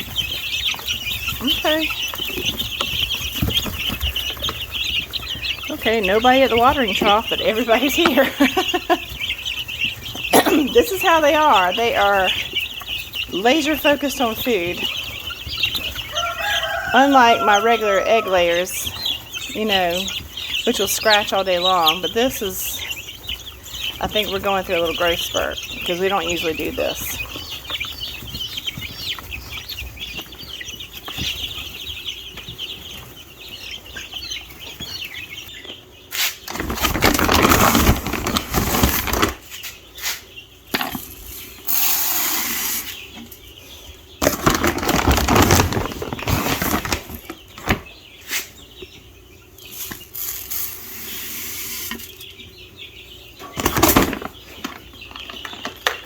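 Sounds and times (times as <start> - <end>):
chicks peeping: 0.0 - 56.0
loud rustling bursts: 36.2 - 39.7.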